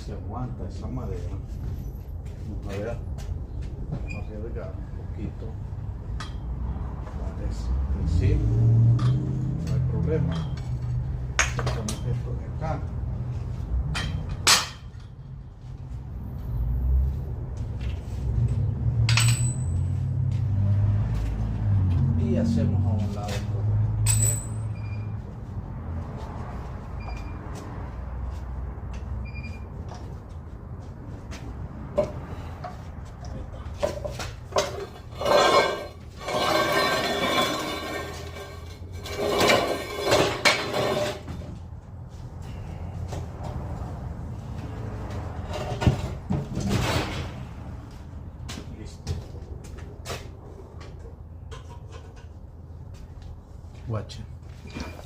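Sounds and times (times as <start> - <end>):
metal tools clinking and scraping: 9.0 - 12.3, 18.5 - 20.1, 23.2 - 25.2, 32.3 - 41.3
sharp metallic clink: 19.1 - 20.0, 24.0 - 25.0.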